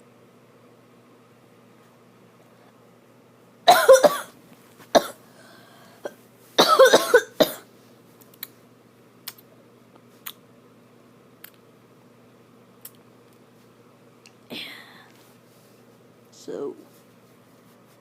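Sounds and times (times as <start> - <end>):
person coughing: 3.7 - 4.3, 5.0 - 5.2, 6.0 - 7.7.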